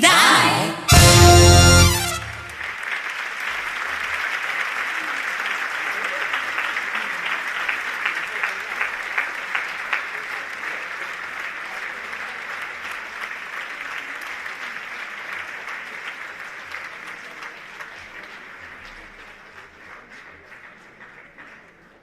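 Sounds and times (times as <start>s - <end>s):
audience applauding: 0.9s - 22.0s.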